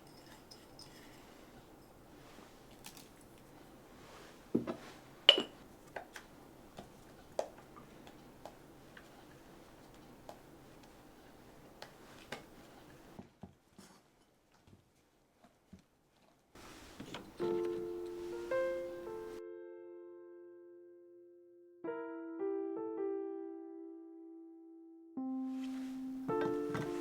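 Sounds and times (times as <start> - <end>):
dishes and utensils clinking: 0.0 - 3.4, 4.6 - 6.2, 26.3 - 27.0.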